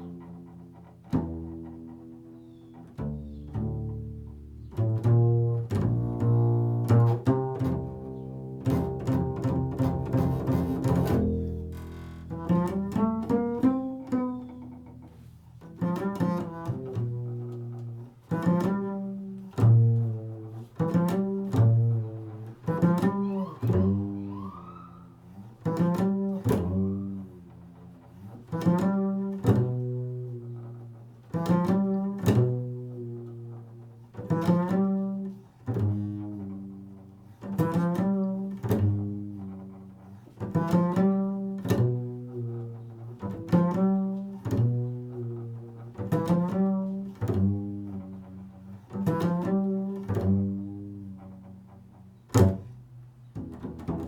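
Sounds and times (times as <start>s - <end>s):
low plucked string notes: 0.0s - 54.0s
upward sliding string sound: 22.4s - 25.8s.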